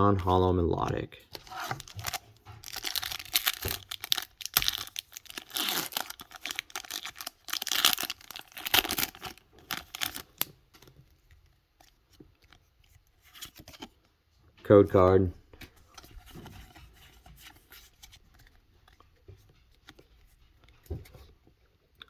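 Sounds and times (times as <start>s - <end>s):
foil wrapper crinkling and tearing: 1.3s - 10.5s.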